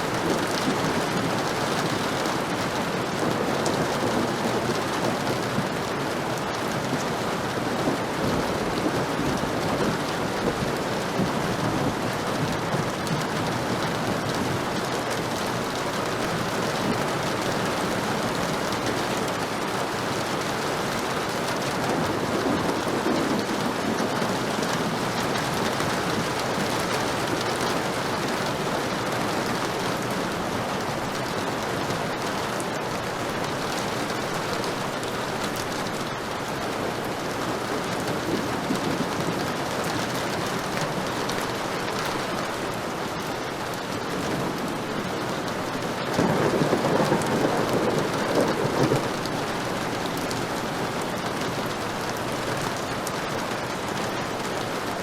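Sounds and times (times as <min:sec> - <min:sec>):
heavy rain falling: 0:00.0 - 0:55.0
thunder rumble: 0:44.2 - 0:50.8.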